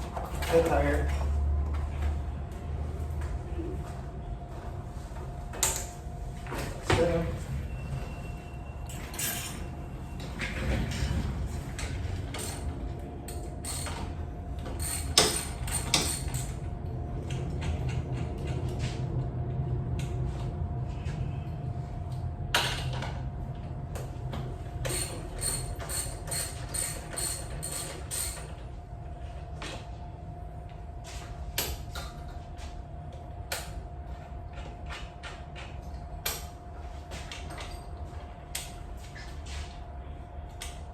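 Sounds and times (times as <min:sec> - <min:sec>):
steady low hum: 0:00.0 - 0:40.9.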